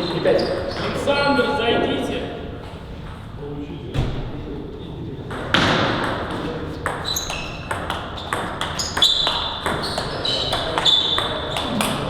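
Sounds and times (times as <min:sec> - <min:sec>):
table tennis balls clicking: 0:05.3 - 0:12.0.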